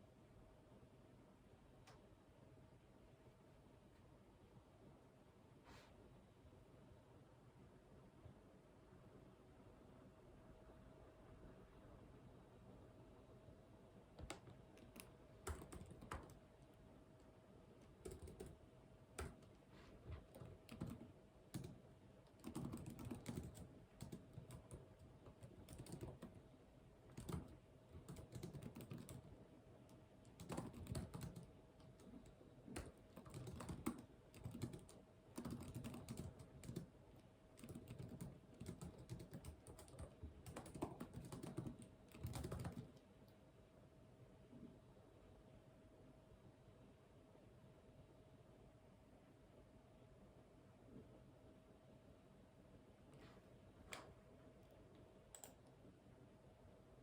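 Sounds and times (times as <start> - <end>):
typing on computer keyboard: 14.2 - 16.7, 17.8 - 26.4, 27.1 - 29.4, 30.2 - 36.9, 37.6 - 43.0, 55.3 - 55.7.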